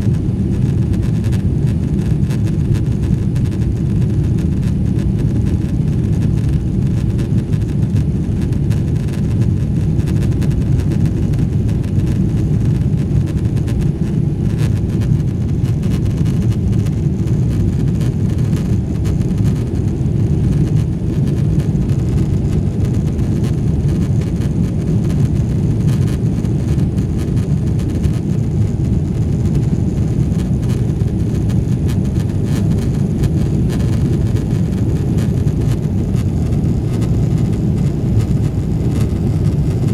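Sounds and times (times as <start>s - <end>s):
jet engines roaring in cabin: 0.0s - 39.9s.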